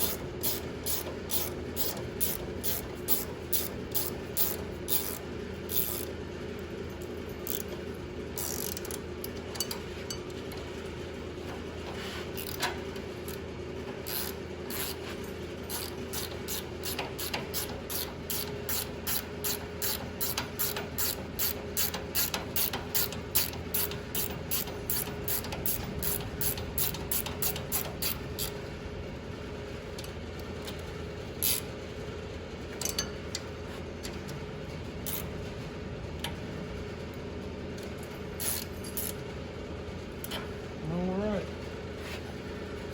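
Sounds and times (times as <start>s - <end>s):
ratchet wrench clicking: 0.0s - 6.1s, 7.4s - 7.8s, 8.4s - 9.0s, 12.4s - 13.4s, 14.0s - 15.0s, 15.7s - 28.6s, 31.4s - 31.7s, 35.0s - 35.2s, 38.4s - 39.2s
steady low hum: 0.0s - 42.9s.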